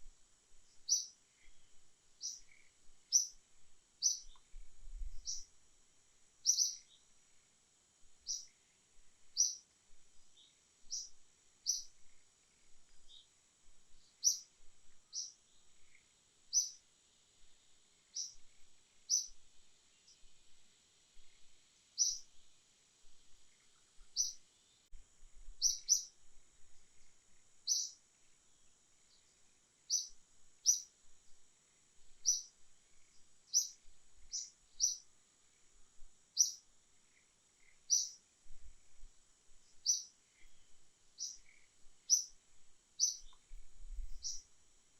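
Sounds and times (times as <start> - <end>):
bird chirps: 0.7 - 3.4, 4.0 - 4.6, 5.2 - 5.5, 6.4 - 7.1, 8.2 - 8.6, 9.3 - 9.7, 10.3 - 13.3, 14.0 - 14.5, 15.1 - 16.8, 18.1 - 18.5, 19.1 - 19.4, 22.0 - 22.3, 23.5 - 24.4, 25.6 - 26.2, 27.6 - 28.0, 29.9 - 30.9, 32.2 - 35.1, 36.4 - 36.6, 37.6 - 38.2, 39.7 - 42.4, 43.0 - 44.5.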